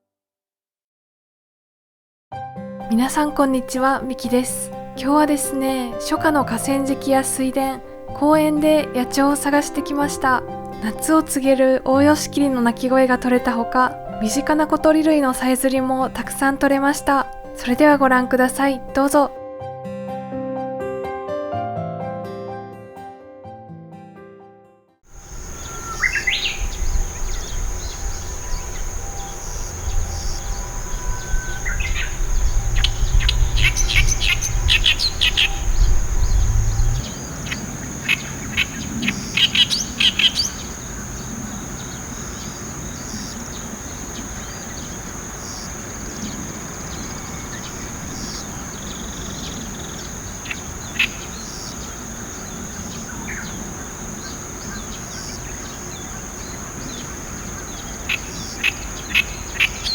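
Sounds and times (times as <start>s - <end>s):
high-pitched insect drone: 25.1s - 59.9s
reed warbler chattering song: 25.1s - 59.9s
low rumble: 26.5s - 37.5s.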